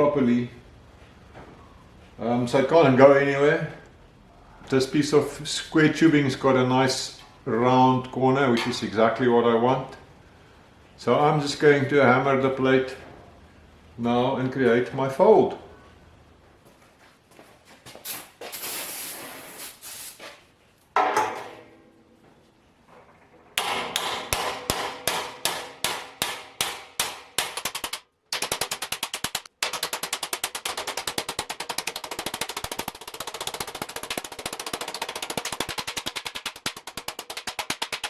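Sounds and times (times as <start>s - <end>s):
hammer striking steel plate: 23.6s - 38.0s.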